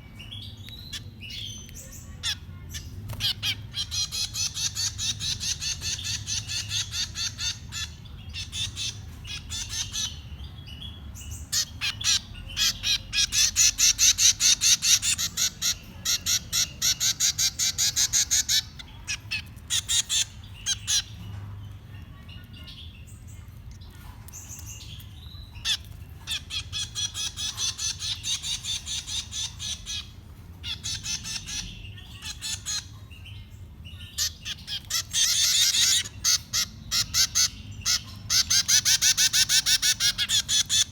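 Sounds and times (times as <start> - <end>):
nestlings begging squeaky calls: 0.2 - 40.9.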